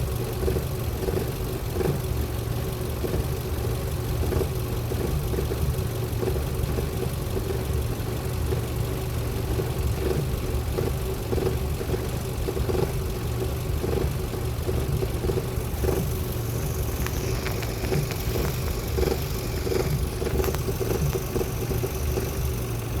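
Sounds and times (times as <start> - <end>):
car engine running: 0.0 - 23.0
high hiss with faint ticks: 15.4 - 23.0.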